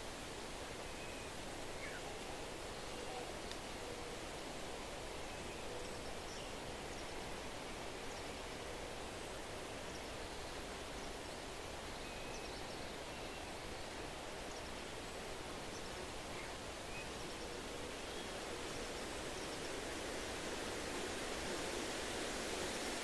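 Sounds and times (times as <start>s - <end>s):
wind rustling tree leaves: 12.6s - 23.0s.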